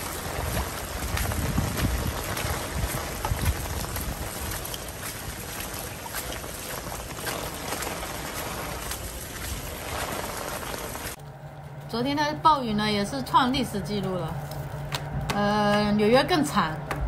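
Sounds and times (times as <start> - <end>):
heavy rain pouring: 0.0 - 11.2
wind buffeting microphone: 0.0 - 11.2
gusting wind: 0.0 - 12.0.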